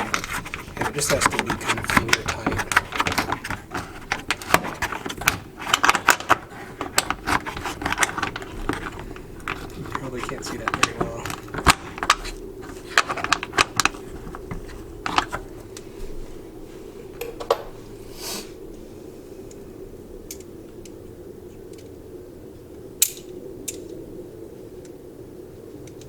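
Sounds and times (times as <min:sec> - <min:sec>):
short hiss: 0:18.1 - 0:18.6.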